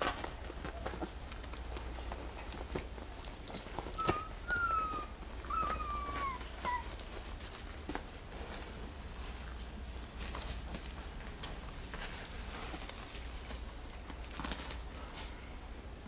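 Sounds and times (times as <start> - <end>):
puppy whining: 3.5 - 7.2.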